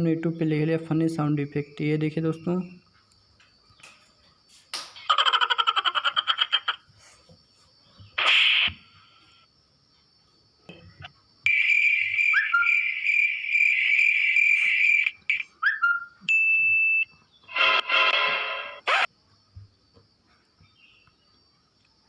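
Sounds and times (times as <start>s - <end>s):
buzzy burst: 8.2s - 8.8s, 17.5s - 19.1s
long shrill sound: 17.5s - 19.1s
comedy sound effects: 18.5s - 19.1s.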